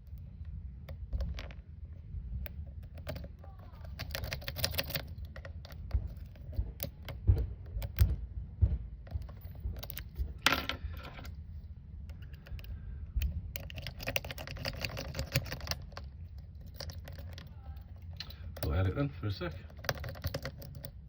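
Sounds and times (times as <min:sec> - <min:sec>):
low handling rumble: 0:00.0 - 0:21.0
lock picks clicking in padlock: 0:02.4 - 0:08.1, 0:09.1 - 0:11.4, 0:12.1 - 0:18.9, 0:19.5 - 0:21.0
scraping rattle: 0:09.1 - 0:11.4, 0:12.1 - 0:21.0.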